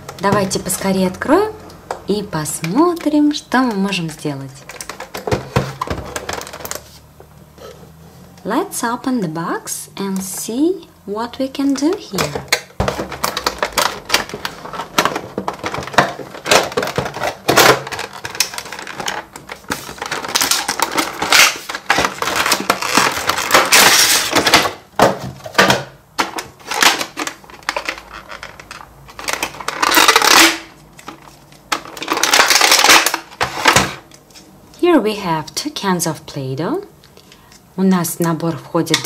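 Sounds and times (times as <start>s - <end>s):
packaging crinkling and tearing: 13.0s - 24.7s, 26.5s - 34.5s.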